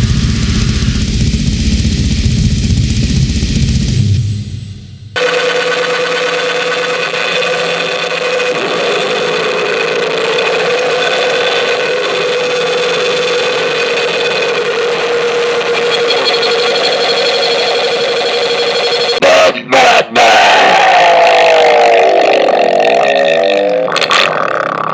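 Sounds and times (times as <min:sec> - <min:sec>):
steady held tones: 0:00.0 - 0:19.3
harsh distorted noise music: 0:00.0 - 0:23.2.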